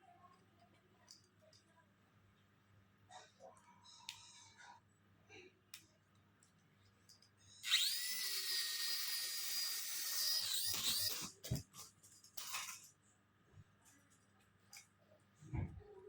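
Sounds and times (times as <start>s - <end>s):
small electric propeller motor whine: 7.6s - 11.3s.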